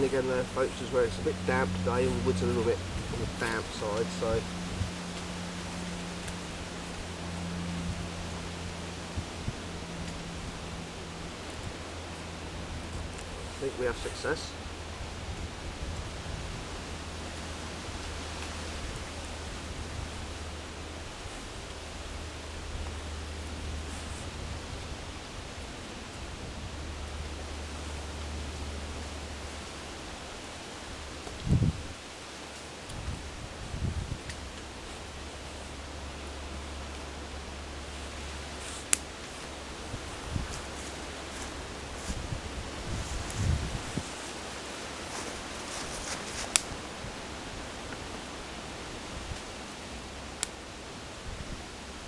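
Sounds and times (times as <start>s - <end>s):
fire hissing: 0.0s - 25.1s, 37.5s - 47.3s
wind blowing across microphone: 0.0s - 52.0s
wood fire crackling: 0.0s - 52.0s
sharp pops from fire: 38.6s - 39.4s.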